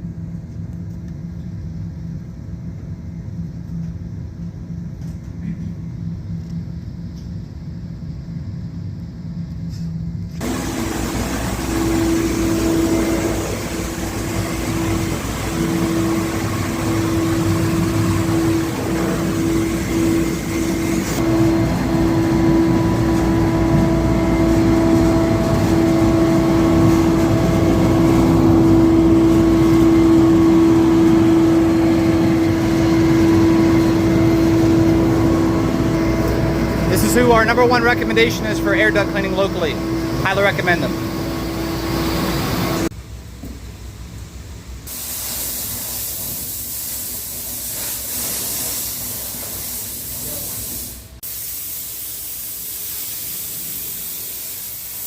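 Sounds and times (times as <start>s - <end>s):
low engine-like hum: 0.0s - 44.9s
steady whine: 0.0s - 44.9s
vacuum machine droning: 0.0s - 45.0s
loud rushing air: 10.4s - 42.9s.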